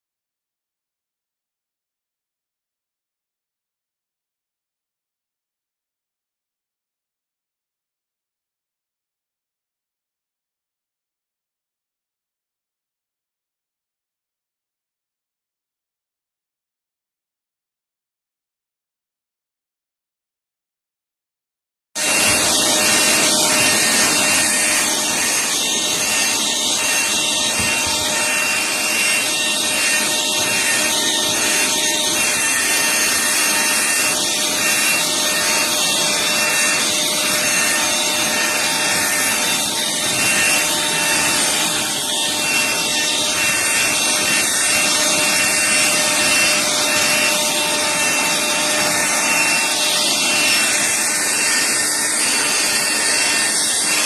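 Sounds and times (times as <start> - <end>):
handheld vacuum running: 22.0 - 54.0.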